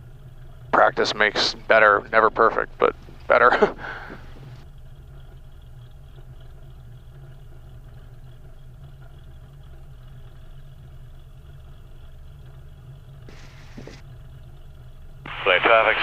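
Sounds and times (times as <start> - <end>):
piston aircraft engine running: 0.0 - 16.0.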